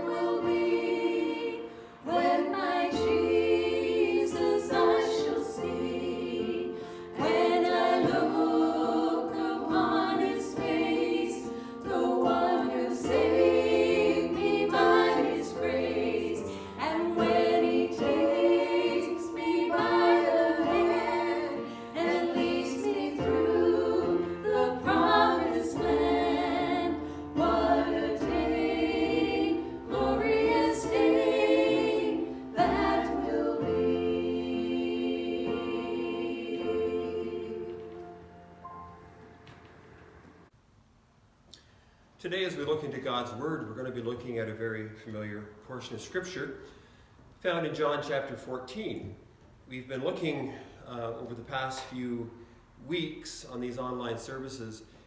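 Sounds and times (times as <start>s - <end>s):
voices singing gospel song: 0.0s - 38.6s.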